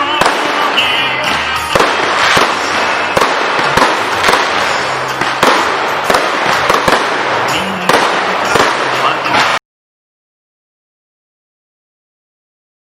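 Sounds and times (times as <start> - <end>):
firework bangs: 0.0 - 9.6
firework crackling: 0.0 - 9.6.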